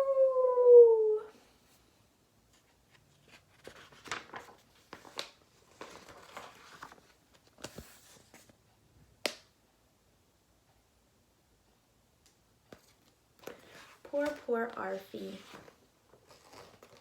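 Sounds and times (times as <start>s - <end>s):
book pages rustling: 2.5s - 8.6s, 12.7s - 17.0s.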